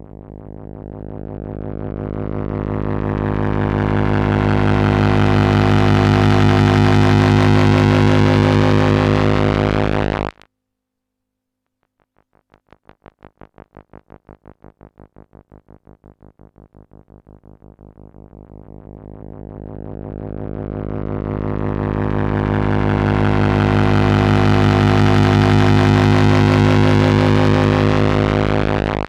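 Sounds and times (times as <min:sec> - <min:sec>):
synthesizer drone chord: 0:00.0 - 0:10.3, 0:16.6 - 0:29.0
pulsing synth tone: 0:17.8 - 0:29.0.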